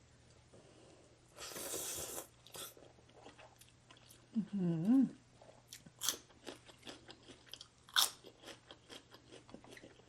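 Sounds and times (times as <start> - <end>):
person chewing crunchy food: 1.5 - 4.3, 5.4 - 10.0.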